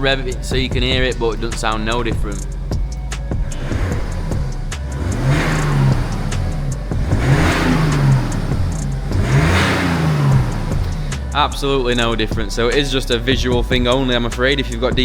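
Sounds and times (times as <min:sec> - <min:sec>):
diesel engine revving: 0:00.0 - 0:15.0.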